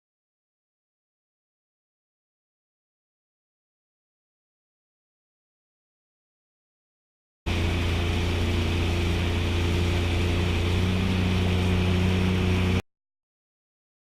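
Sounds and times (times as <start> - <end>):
jet ski engine humming: 7.5 - 12.8
water and wind noise: 7.5 - 12.8.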